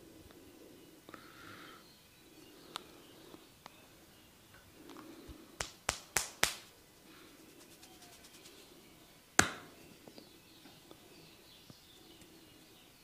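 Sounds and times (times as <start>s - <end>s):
hand strikes on head: 9.4s - 9.6s.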